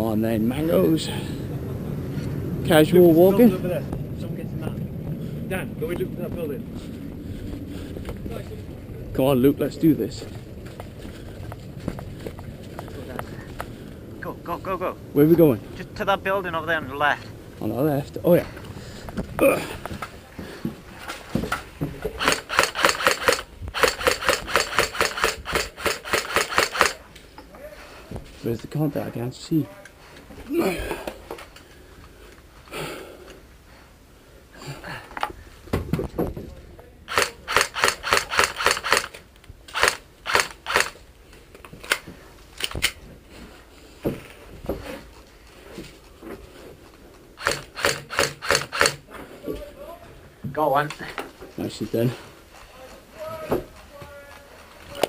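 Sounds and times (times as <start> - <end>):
running footsteps: 9.8 - 14.1
airsoft gun shots: 22.2 - 27.0, 47.4 - 49.0.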